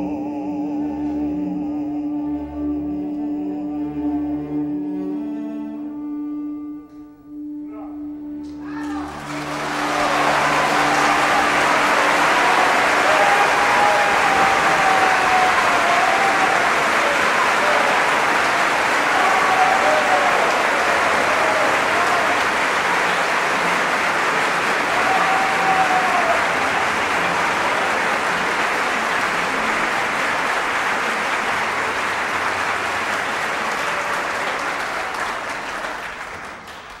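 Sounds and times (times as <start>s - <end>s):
audience applauding: 8.4s - 37.0s.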